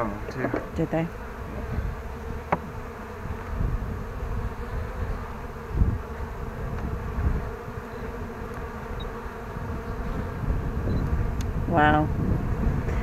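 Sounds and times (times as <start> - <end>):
bees buzzing: 0.0 - 13.0
low rumbling on microphone: 0.0 - 13.0
dull bump: 2.4 - 2.8.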